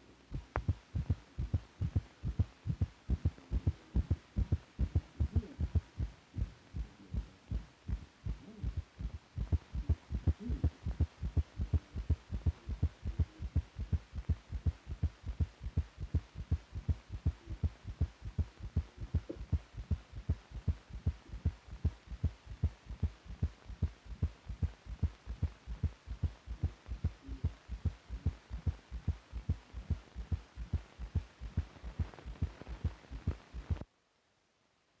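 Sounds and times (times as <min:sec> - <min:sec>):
heartbeat thumps: 0:00.0 - 0:33.8
faint hum: 0:00.0 - 0:35.0.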